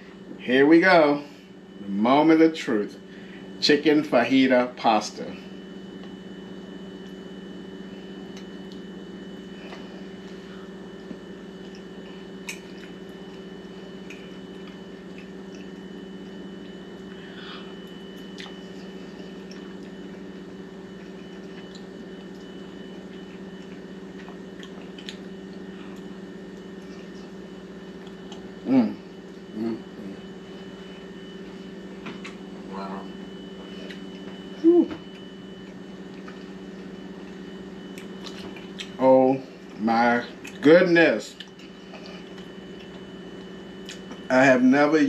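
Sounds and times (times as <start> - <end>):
steady low hum: 0.0 - 45.0
person chewing food: 8.0 - 39.0, 39.6 - 40.6, 41.4 - 44.3.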